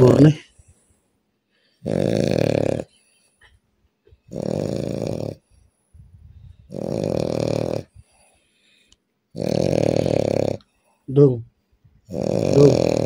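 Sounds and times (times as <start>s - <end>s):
man snoring loudly: 0.0s - 0.4s, 1.8s - 2.9s, 4.3s - 5.4s, 6.7s - 8.0s, 9.3s - 10.6s, 12.1s - 13.0s.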